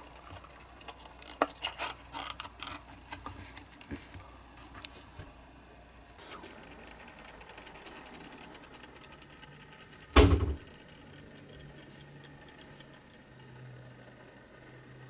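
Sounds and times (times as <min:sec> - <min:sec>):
heavy thump: 0:10.2 - 0:10.7.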